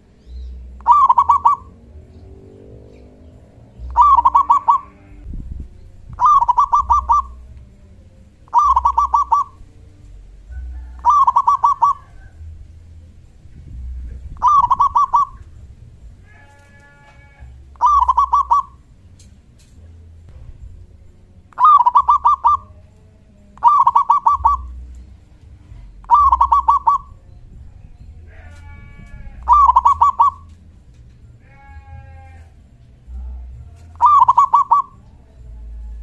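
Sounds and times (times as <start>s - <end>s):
dove cooing: 0.8s - 1.9s, 3.9s - 5.2s, 6.0s - 12.4s, 14.1s - 15.6s, 17.7s - 18.9s, 21.5s - 22.8s, 23.6s - 25.0s, 25.8s - 27.3s, 28.7s - 30.6s, 33.9s - 35.1s
faint calls of another bird: 28.3s - 30.5s.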